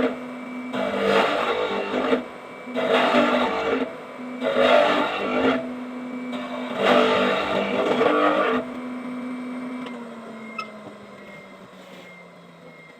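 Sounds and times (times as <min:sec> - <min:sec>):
power tool cutting into wood: 0:00.0 - 0:05.7, 0:06.3 - 0:08.8
electric power tool humming: 0:00.0 - 0:12.0.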